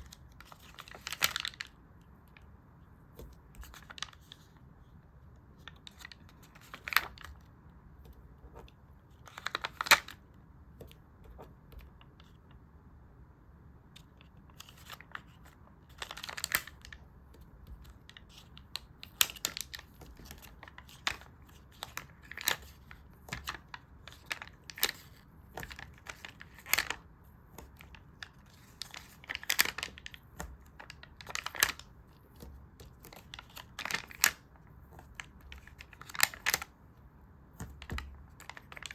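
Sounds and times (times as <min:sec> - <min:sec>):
paper rustling: 0:00.0 - 0:01.7, 0:03.1 - 0:04.6, 0:14.0 - 0:36.8, 0:37.5 - 0:38.9.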